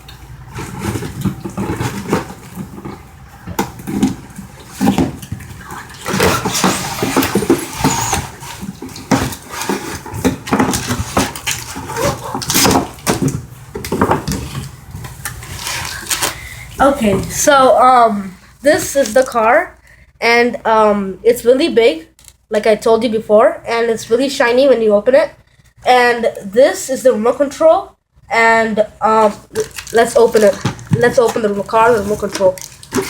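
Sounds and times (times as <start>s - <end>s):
packaging rustling and scraping: 0.4s - 17.4s, 18.7s - 19.5s, 29.2s - 33.0s.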